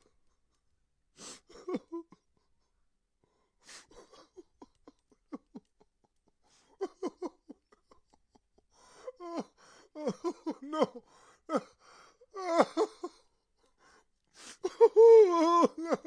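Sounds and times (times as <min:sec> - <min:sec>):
person sobbing: 0:01.2 - 0:02.5, 0:03.6 - 0:16.0
person gasping inhales: 0:11.0 - 0:12.2.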